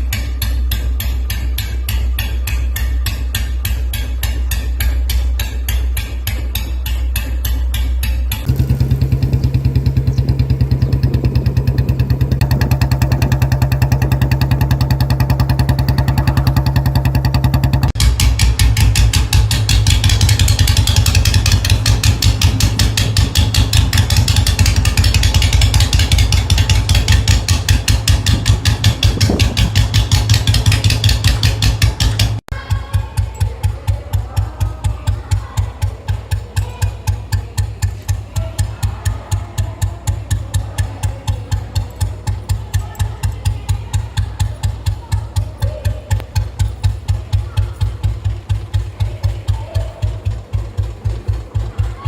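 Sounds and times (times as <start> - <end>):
motorcycle engine thumping: 0.0 - 52.0.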